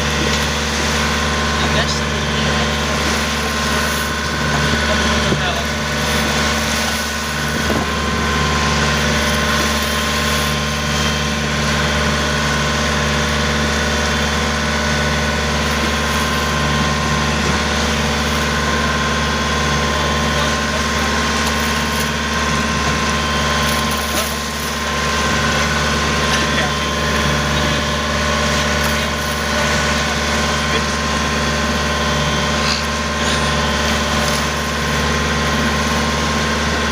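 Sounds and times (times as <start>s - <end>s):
boat engine humming: 0.0s - 36.9s.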